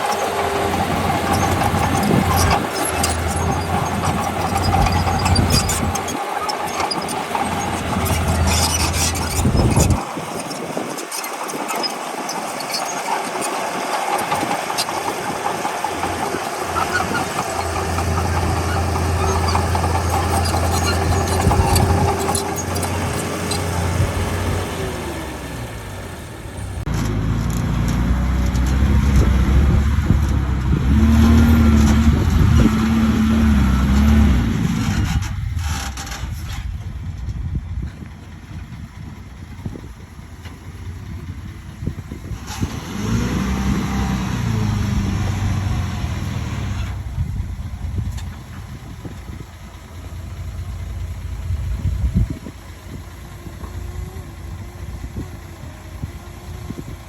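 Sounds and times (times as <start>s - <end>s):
heavy diesel engine revving: 0.0s - 57.0s.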